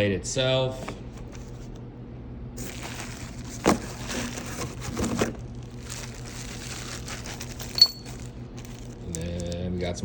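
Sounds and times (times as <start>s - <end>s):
plastic packaging crinkling: 2.6s - 9.8s.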